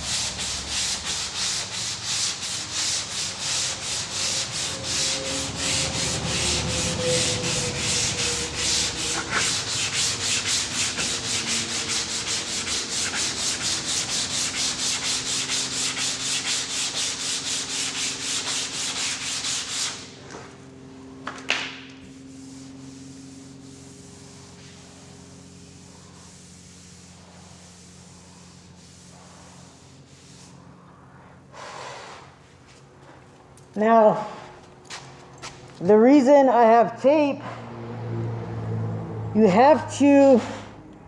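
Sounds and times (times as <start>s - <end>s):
sandpaper rasping: 0.0s - 20.2s, 22.0s - 30.7s.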